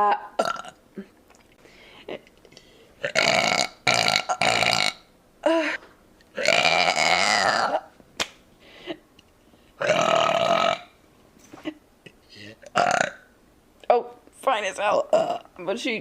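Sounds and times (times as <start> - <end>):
woman burping: 0.0 - 1.2, 3.0 - 5.8, 6.4 - 7.9, 9.8 - 10.9, 12.6 - 13.3, 15.1 - 15.5.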